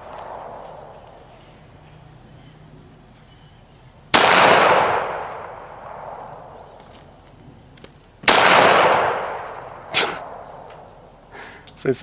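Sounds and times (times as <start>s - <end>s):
pistol shots with echo: 0.0s - 1.0s, 4.1s - 6.8s, 8.2s - 10.9s.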